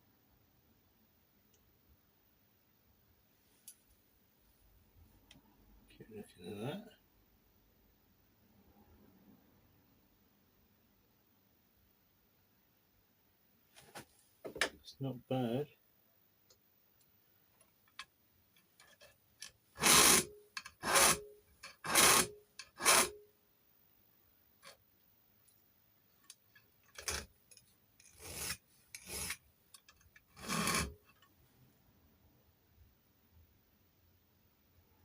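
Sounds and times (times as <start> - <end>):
hand file rasping on metal key: 19.8 - 23.2, 26.9 - 31.2.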